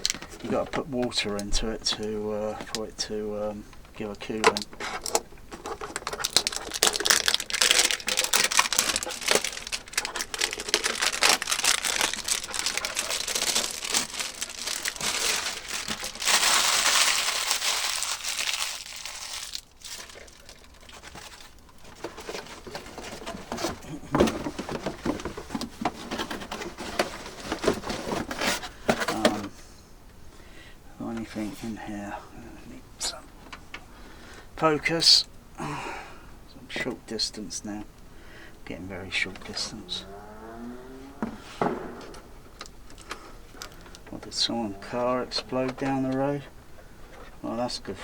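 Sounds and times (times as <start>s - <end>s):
packaging crinkling and rustling: 0.0s - 2.9s, 4.0s - 29.5s, 41.6s - 48.0s.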